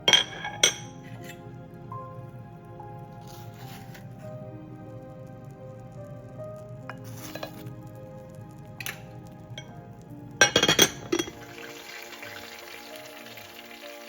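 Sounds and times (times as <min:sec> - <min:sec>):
cookware clinking: 0:00.0 - 0:01.4, 0:10.4 - 0:11.4
loud cookware clatter: 0:00.0 - 0:01.4, 0:10.4 - 0:11.5
background music: 0:00.0 - 0:14.0
frying sizzle: 0:00.0 - 0:14.0.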